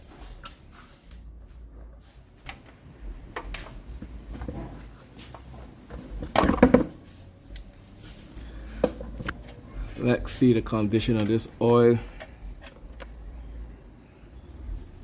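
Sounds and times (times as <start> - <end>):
metal tools clinking: 6.3 - 7.5.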